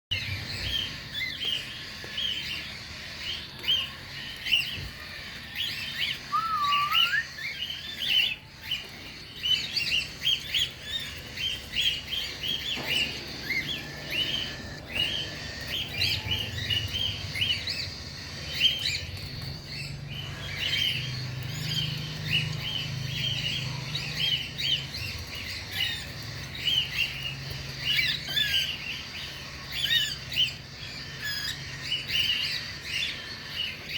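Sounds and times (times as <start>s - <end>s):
cockatiels chirping and chattering: 0.1s - 33.9s
rising bird whistle: 6.1s - 7.6s.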